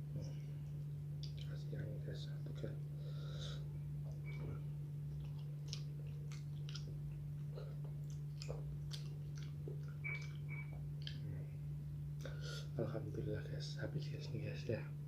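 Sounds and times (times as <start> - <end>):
steady low hum: 0.0 - 15.0
wet mouth clicks and smacks: 1.2 - 1.6, 5.1 - 11.2
person chewing food: 4.0 - 11.4.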